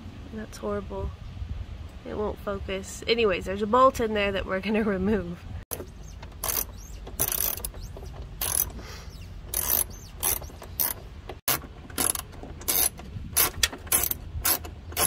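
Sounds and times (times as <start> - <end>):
ratchet wrench clicking: 5.7 - 15.0.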